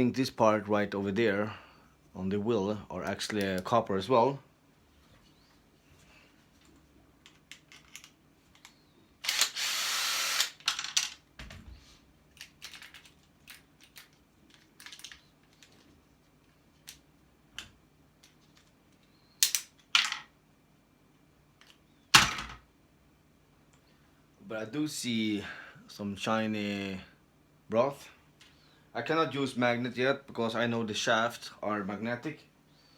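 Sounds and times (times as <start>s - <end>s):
tools and metal parts clattering: 7.2s - 8.7s, 12.3s - 16.0s.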